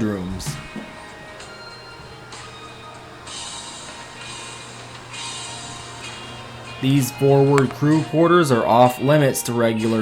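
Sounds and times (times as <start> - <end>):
background music drone: 0.0 - 10.0
high hiss swells: 0.9 - 8.2.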